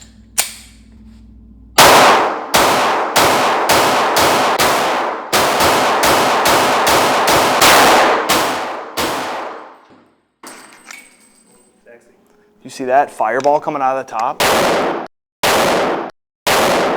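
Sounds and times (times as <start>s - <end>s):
pistol shots: 1.8s - 9.9s, 14.3s - 16.9s.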